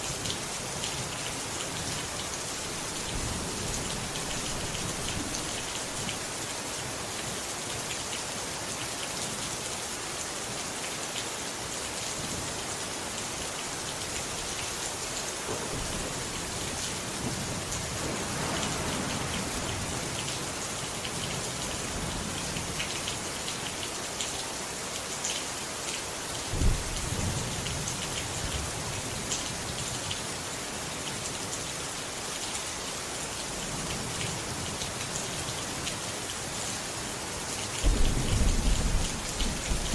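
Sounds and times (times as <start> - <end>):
heavy rain pattering: 0.1 - 8.2, 12.5 - 32.2, 33.2 - 39.9
loud thunderclap: 26.5 - 27.0, 37.8 - 39.9
low thunder rumbles: 26.5 - 27.4, 37.8 - 39.9.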